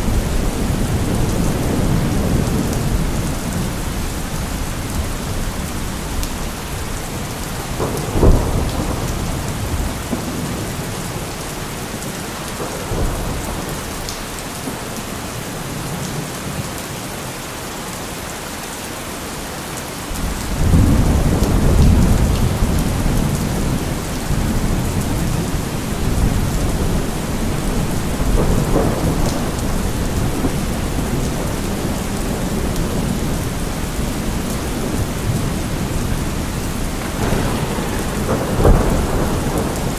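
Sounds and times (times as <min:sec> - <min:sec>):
low thunder rumble: 0:00.0 - 0:12.0, 0:20.1 - 0:39.9
steady rain falling: 0:00.0 - 0:39.9
thunder crack: 0:07.6 - 0:11.3, 0:20.2 - 0:39.9.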